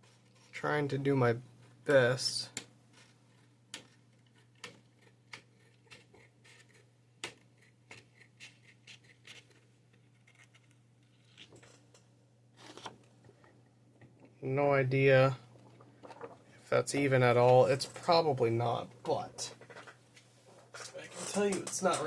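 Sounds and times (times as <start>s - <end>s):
low steady hum: 9.4s - 22.0s.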